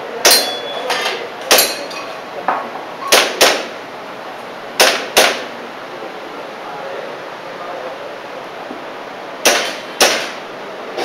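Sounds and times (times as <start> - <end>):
airsoft pistol shots: 3.1 - 3.7, 4.8 - 5.5, 9.4 - 10.4.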